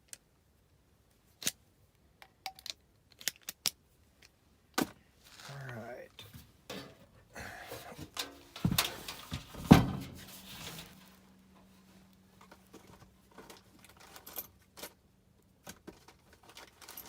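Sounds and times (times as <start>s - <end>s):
faint steady hum: 4.0s - 16.1s
metal parts knocking and clanking: 6.2s - 11.1s.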